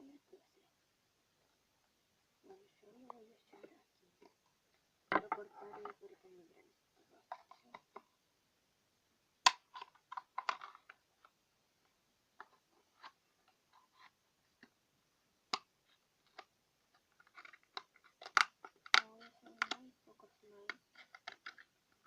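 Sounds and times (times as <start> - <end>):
clicks and taps handling containers: 17.2 - 19.8.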